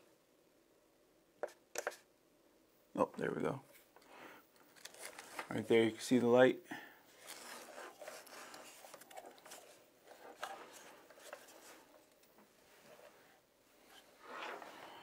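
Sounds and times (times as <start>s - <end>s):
faint handling rustles and clicks: 3.7s - 5.9s, 7.1s - 15.0s.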